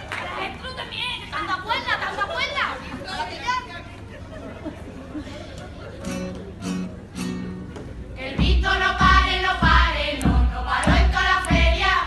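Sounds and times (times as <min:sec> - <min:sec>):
group of voices singing: 0:08.2 - 0:12.0
steady bass drum beat: 0:08.4 - 0:11.9.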